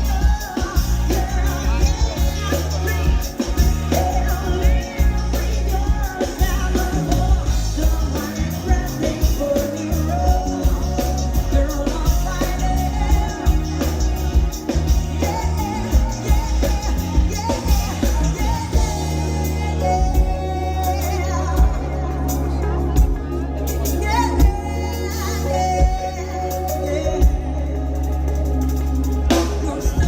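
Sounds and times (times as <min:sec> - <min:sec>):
bass: 0:00.0 - 0:30.0
drums: 0:00.0 - 0:30.0
keyboards: 0:00.0 - 0:30.0
woman singing: 0:00.0 - 0:30.0.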